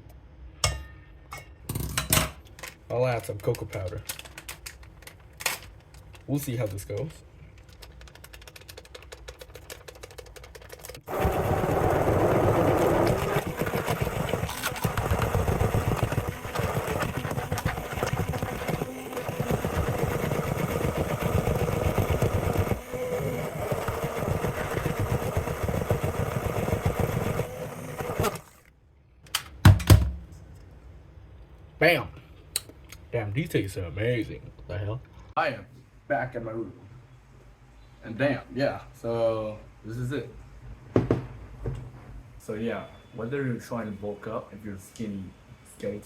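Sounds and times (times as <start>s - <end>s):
hand blender running: 11.1s - 28.6s.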